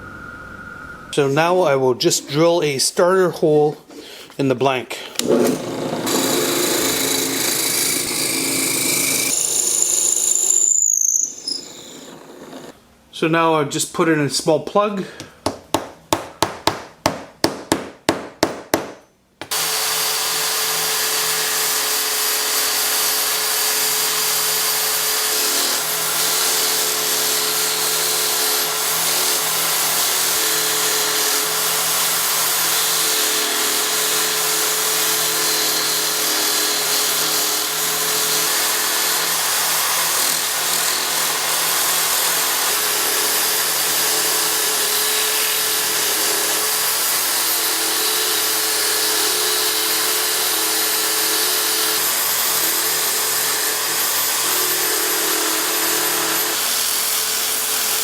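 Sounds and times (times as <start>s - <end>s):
tool cutting wood hiss: 5.0s - 12.8s
wood lathe humming: 5.2s - 12.8s, 19.4s - 58.0s
sharp taps on wood: 15.2s - 19.0s.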